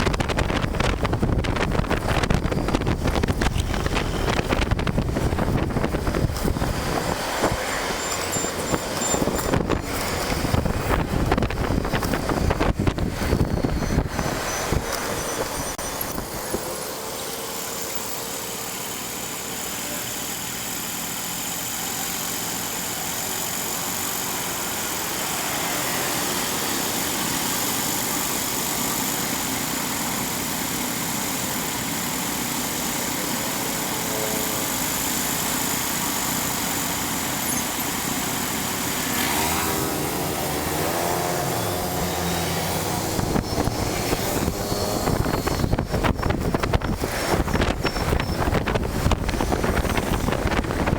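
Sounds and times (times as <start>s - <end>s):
road and wind noise: 0.0s - 50.9s.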